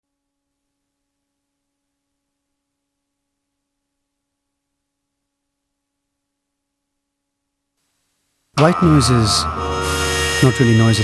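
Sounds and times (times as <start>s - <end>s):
faint hiss: 7.8s - 11.0s.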